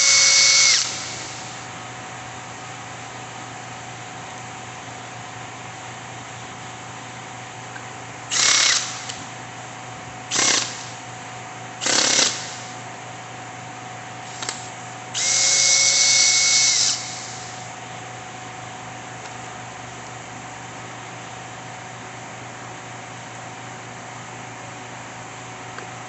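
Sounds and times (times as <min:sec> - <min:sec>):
power drill whining: 0:00.0 - 0:01.6, 0:08.3 - 0:09.2, 0:10.3 - 0:10.9, 0:11.8 - 0:12.7, 0:15.2 - 0:17.6.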